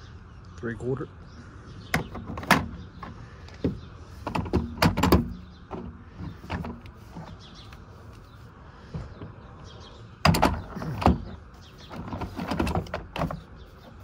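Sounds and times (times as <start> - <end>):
metal jaws clunking in plastic case: 1.9 - 7.3.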